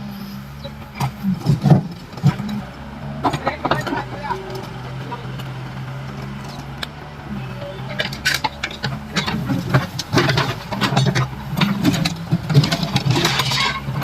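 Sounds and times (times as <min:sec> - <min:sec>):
excavator diesel engine running: 0:00.0 - 0:14.0
concrete knocking and cracking: 0:07.9 - 0:14.0.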